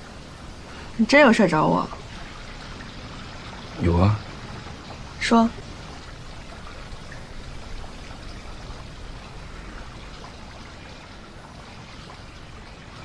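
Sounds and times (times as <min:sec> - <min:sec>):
steady trickling noise: 0:00.0 - 0:13.0.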